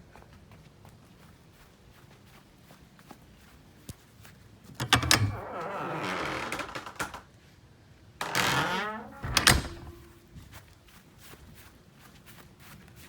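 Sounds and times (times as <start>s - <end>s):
door clicks and knocks: 4.8s - 7.2s, 8.2s - 10.2s
door hard thud: 8.2s - 10.2s
door rushing scrape: 8.2s - 10.2s.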